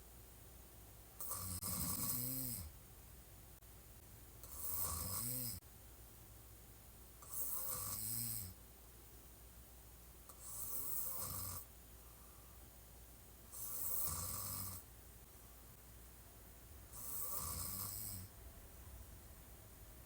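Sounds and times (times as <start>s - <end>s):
woman snoring: 1.2s - 2.7s, 4.4s - 5.6s, 7.2s - 8.6s, 10.3s - 11.7s, 13.5s - 14.8s, 16.9s - 18.4s.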